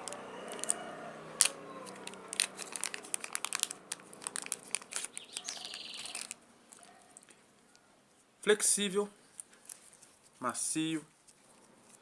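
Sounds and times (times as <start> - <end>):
plastic wrapper crinkling: 1.4 - 7.4, 9.3 - 10.3.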